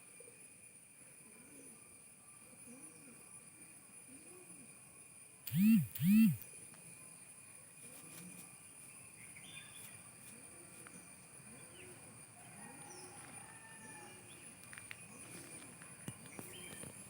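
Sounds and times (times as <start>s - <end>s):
steady high hum: 5.5s - 6.4s.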